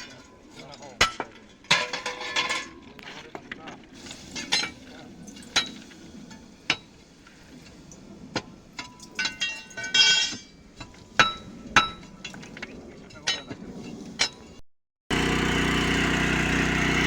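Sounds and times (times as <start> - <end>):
metal tools striking steel rail: 0.0 - 2.7.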